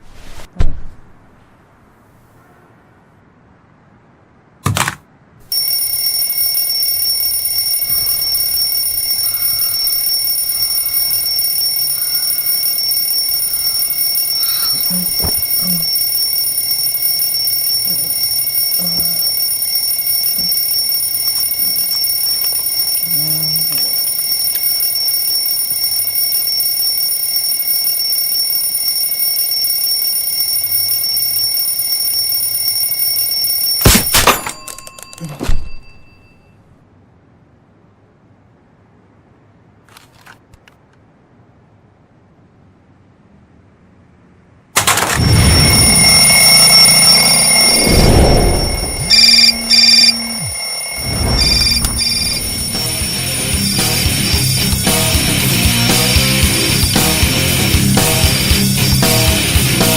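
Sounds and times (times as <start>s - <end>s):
alarm clock tone: 5.5s - 36.6s, 44.8s - 59.9s.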